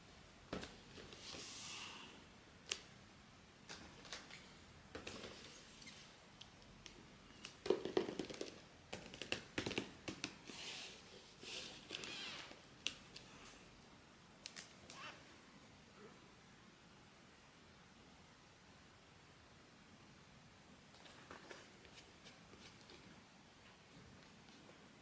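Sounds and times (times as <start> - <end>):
packaging clicks and taps: 6.8 - 10.4.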